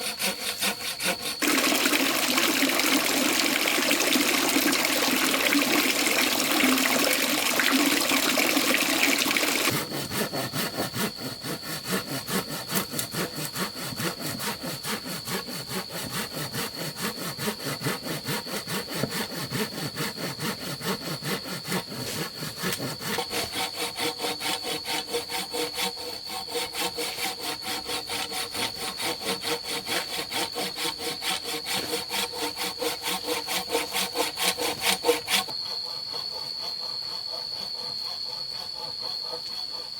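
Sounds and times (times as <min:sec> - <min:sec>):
hand saw cutting bamboo: 0:00.0 - 0:39.9
rushing water-like noise: 0:01.4 - 0:09.7.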